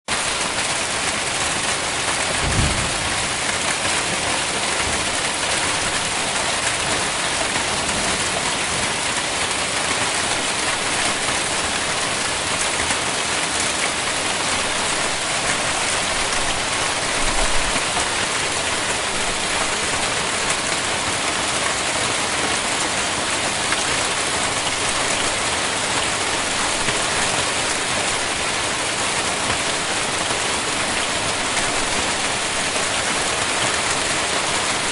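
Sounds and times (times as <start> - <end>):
hailstones clattering: 0.9 - 13.1
low thuds: 2.3 - 4.2.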